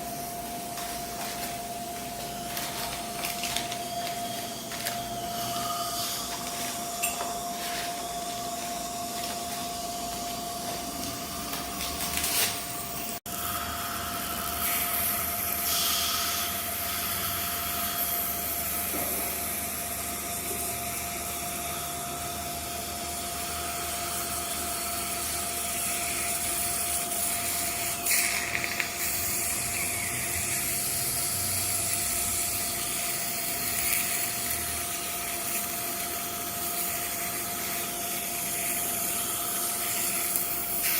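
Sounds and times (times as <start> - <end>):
dental drill whining: 0.0 - 40.9
suction: 0.0 - 40.9.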